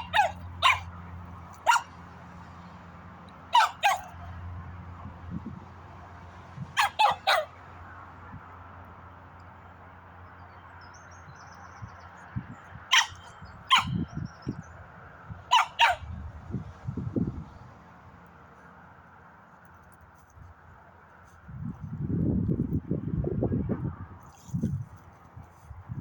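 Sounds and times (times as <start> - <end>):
dog barking: 0.0 - 1.0, 1.6 - 2.0, 3.5 - 4.2, 6.8 - 7.6, 12.9 - 14.0, 15.5 - 16.1.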